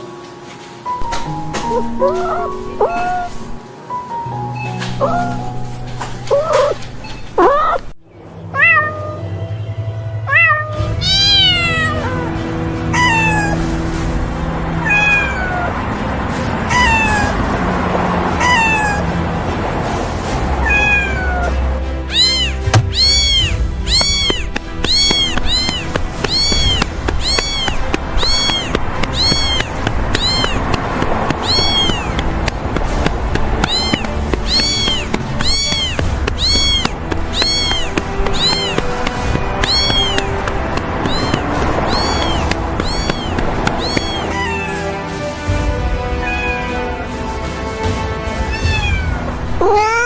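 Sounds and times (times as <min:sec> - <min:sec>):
background music: 0:00.0 - 0:07.1, 0:08.0 - 0:50.0
cat meowing: 0:01.7 - 0:03.5, 0:04.6 - 0:05.6, 0:06.3 - 0:07.9, 0:08.5 - 0:09.2, 0:10.3 - 0:13.9, 0:14.7 - 0:15.9, 0:16.7 - 0:17.4, 0:18.3 - 0:19.2, 0:20.6 - 0:45.1, 0:46.2 - 0:47.0, 0:48.5 - 0:50.0.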